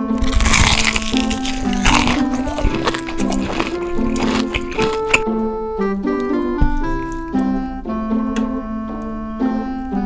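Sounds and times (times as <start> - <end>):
piano-like keyboard melody: 0.0 - 10.0.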